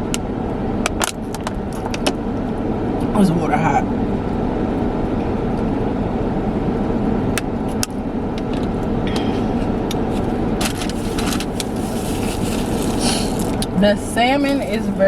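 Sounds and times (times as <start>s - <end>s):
car engine rumble inside cabin: 0.0s - 15.0s
crinkles: 10.6s - 13.7s.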